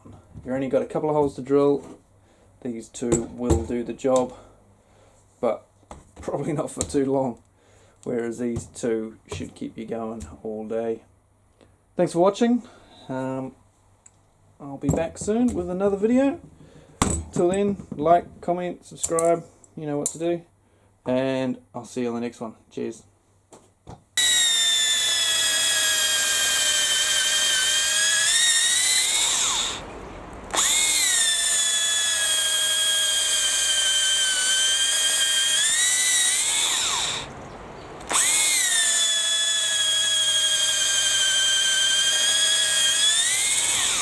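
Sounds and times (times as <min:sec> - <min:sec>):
cordless drill whining: 0:24.2 - 0:44.0.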